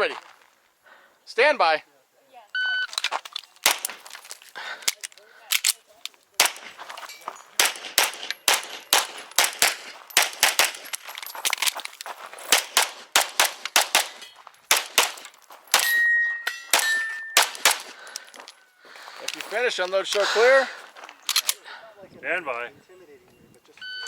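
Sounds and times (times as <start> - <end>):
pistol shots: 3.6 - 4.1, 6.4 - 6.8, 7.6 - 11.0, 12.5 - 18.0
steel targets ringing: 15.7 - 17.6.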